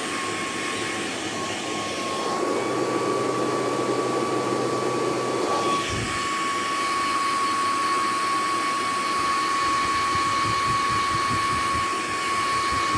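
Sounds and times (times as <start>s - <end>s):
hair dryer running: 0.0s - 12.9s.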